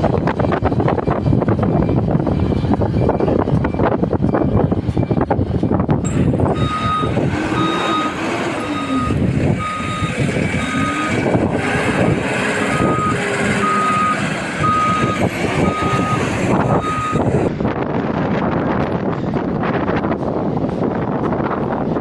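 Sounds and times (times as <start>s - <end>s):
diesel engine revving: 6.0s - 17.5s
reversing alarm beeping: 6.0s - 17.5s.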